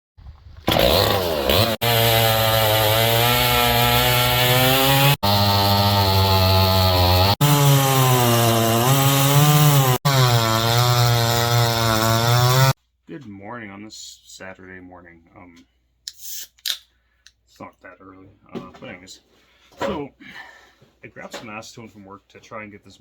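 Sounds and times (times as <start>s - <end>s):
chainsaw revving: 0.7s - 12.8s.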